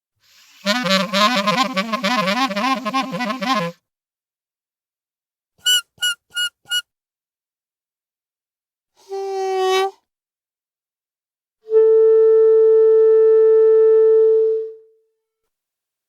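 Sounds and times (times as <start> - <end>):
clarinet notes: 0.7 - 3.8, 5.6 - 6.8.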